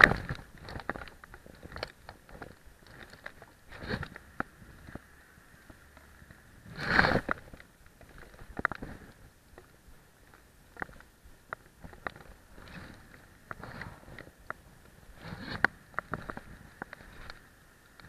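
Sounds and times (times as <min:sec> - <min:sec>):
crunching and clicking handling noise: 0:00.0 - 0:18.0.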